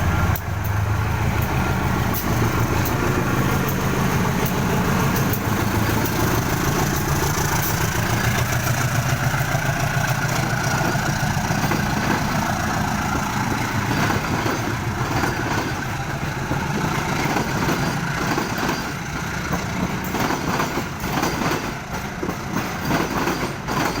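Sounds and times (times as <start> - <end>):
diesel locomotive engine humming: 0.0 - 23.7.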